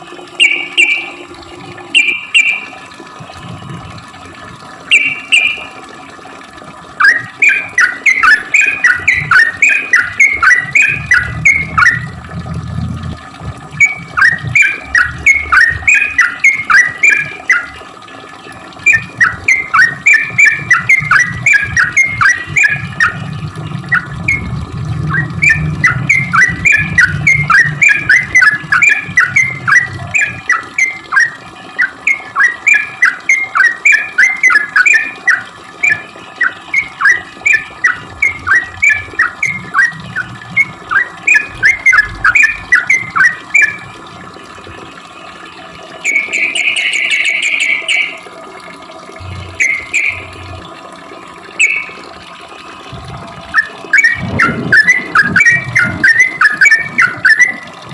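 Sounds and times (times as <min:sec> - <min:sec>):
bird chattering song: 0:00.4 - 0:01.1, 0:02.0 - 0:02.6, 0:04.9 - 0:05.7, 0:07.0 - 0:12.1, 0:46.1 - 0:48.2, 0:49.3 - 0:50.4.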